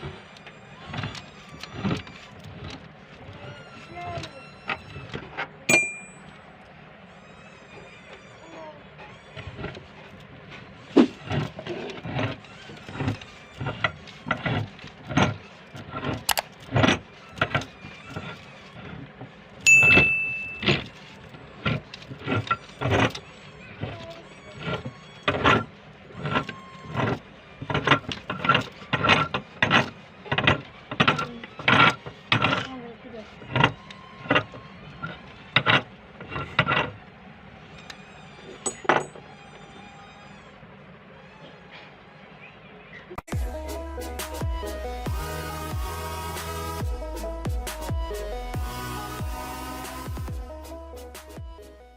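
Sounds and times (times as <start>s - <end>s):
plastic toys cracking and crunching: 9.2s - 19.6s
meat grinder motor: 9.2s - 37.2s
hard objects clinking together: 16.2s - 16.6s, 38.6s - 39.2s.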